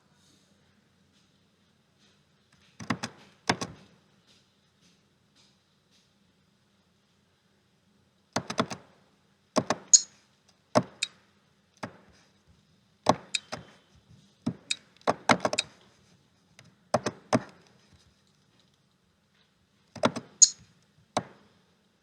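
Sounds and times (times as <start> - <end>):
sharp clicks and light knocks: 2.6 - 3.9, 8.4 - 8.8, 16.6 - 21.4.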